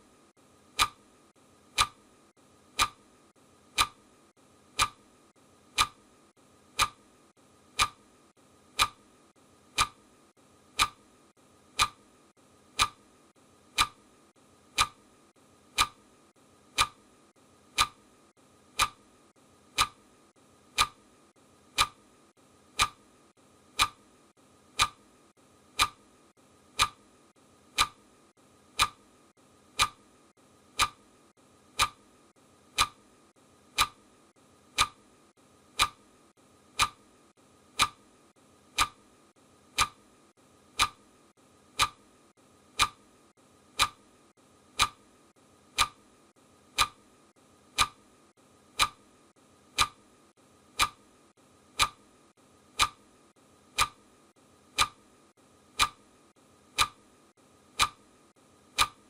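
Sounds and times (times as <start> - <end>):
clock ticking: 0.7 - 1.1, 1.7 - 2.1, 2.7 - 3.1, 3.7 - 4.1, 4.7 - 5.1, 5.7 - 6.1, 6.7 - 7.1, 7.7 - 8.1, 8.7 - 9.1, 9.7 - 10.1, 10.7 - 11.1, 11.7 - 12.1, 12.7 - 13.1, 13.7 - 14.1, 14.7 - 15.1, 15.7 - 16.1, 16.7 - 17.1, 17.7 - 18.1, 18.7 - 19.1, 19.7 - 20.1, 20.7 - 21.1, 21.7 - 22.1, 22.7 - 23.0, 23.7 - 24.0, 24.7 - 25.1, 25.7 - 26.0, 26.7 - 27.0, 27.7 - 28.0, 28.7 - 29.1, 29.7 - 30.0, 30.7 - 31.0, 31.7 - 32.1, 32.7 - 33.1, 33.7 - 34.1, 34.7 - 35.1, 35.7 - 36.1, 36.7 - 37.1, 37.7 - 38.0, 38.7 - 39.1, 39.7 - 40.1, 40.7 - 41.0, 41.7 - 42.1, 42.7 - 43.0, 43.7 - 44.1, 44.7 - 45.0, 45.7 - 46.1, 46.7 - 47.1, 47.7 - 48.1, 48.7 - 49.0, 49.7 - 50.1, 50.7 - 51.1, 51.7 - 52.0, 52.7 - 53.0, 53.7 - 54.0, 54.7 - 55.0, 55.7 - 56.0, 56.7 - 57.0, 57.7 - 58.0, 58.7 - 59.0.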